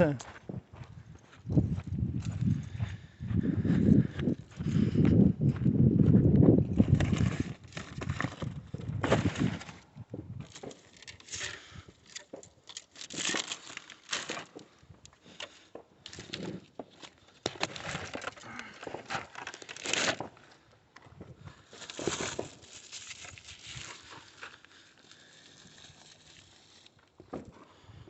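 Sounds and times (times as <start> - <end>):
rustling and crinkling: 6.6 - 28.0.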